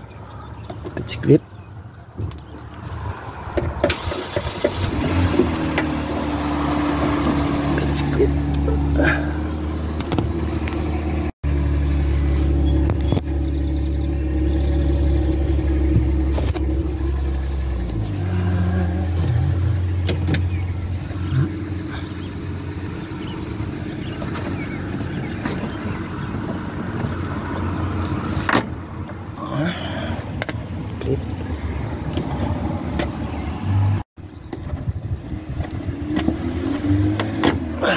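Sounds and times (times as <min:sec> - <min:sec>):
car engine humming: 0:00.0 - 0:37.9.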